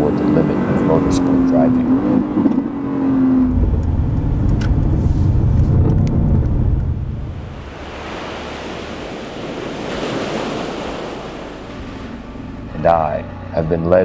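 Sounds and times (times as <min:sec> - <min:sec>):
ocean waves breaking: 0:00.0 - 0:13.2
deep rumble: 0:00.0 - 0:13.5.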